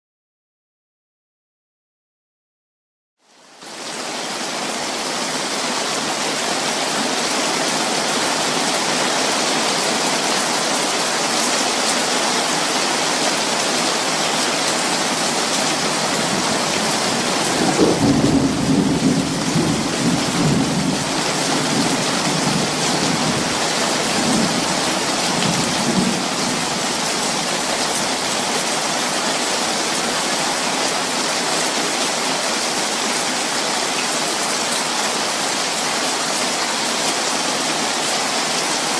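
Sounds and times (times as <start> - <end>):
steady rain falling: 3.2 - 38.9
thunder rumbling: 15.8 - 28.2.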